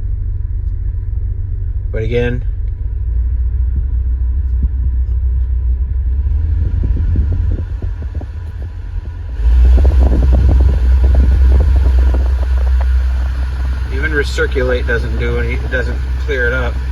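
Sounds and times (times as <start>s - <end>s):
blower fan low rumble: 0.0s - 16.9s
rush of air: 5.8s - 14.3s.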